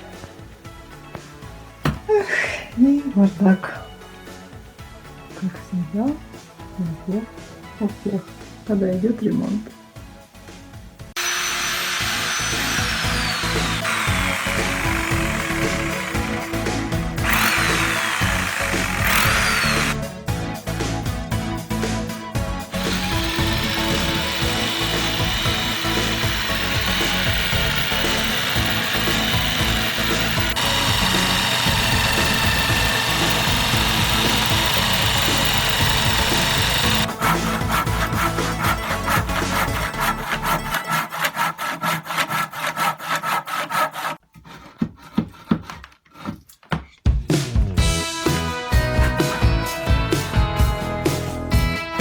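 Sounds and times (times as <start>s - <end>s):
power tool cutting wood: 11.2s - 20.0s, 22.7s - 44.2s.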